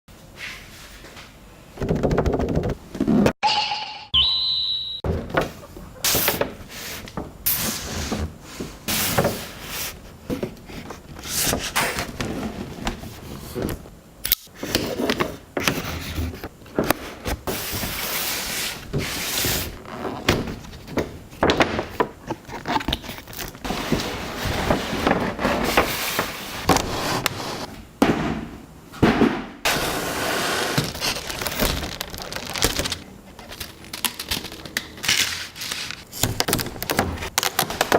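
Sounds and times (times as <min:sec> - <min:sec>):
packaging rustling: 0:30.7 - 0:37.9.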